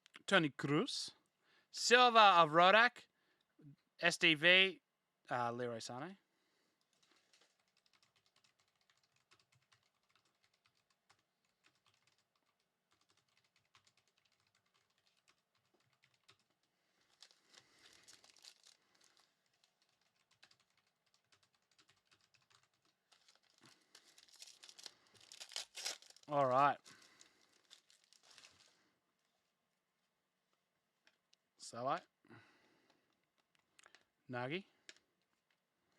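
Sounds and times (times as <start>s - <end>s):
trading cards being handled: 22.8s - 28.8s.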